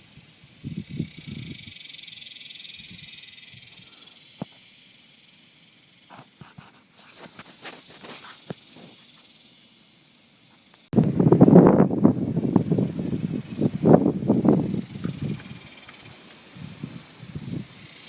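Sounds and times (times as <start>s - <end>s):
steady hiss: 0.0s - 18.0s.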